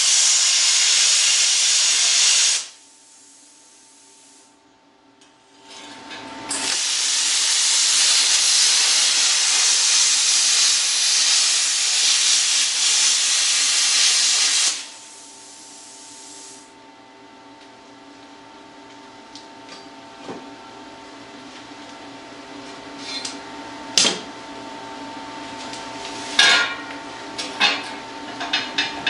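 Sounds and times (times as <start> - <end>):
plasma cutter hissing: 0.0 - 4.5, 6.5 - 16.7
faint machine hum: 0.0 - 29.0.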